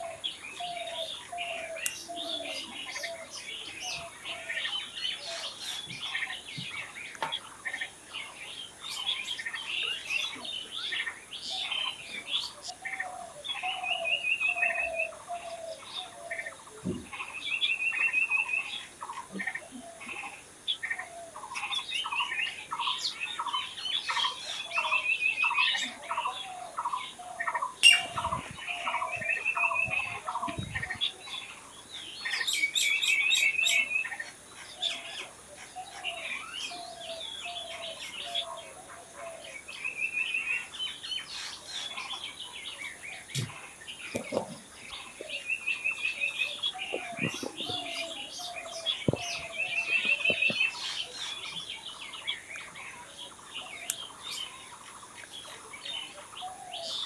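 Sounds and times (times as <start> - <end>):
birds singing and chirping: 0.0 - 57.0
bird trill: 17.2 - 31.4, 44.9 - 54.8
dull thumps: 49.0 - 50.7.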